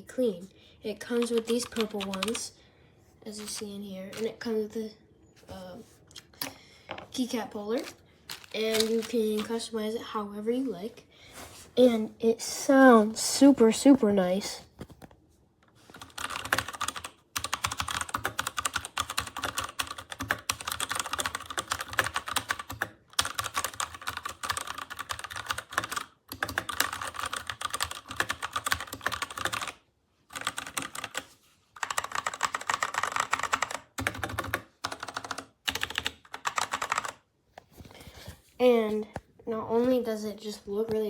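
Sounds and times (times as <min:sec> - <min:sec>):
fast typing on mechanical keyboard: 0:01.0 - 0:02.5, 0:03.4 - 0:04.4, 0:08.3 - 0:09.6, 0:15.9 - 0:37.3.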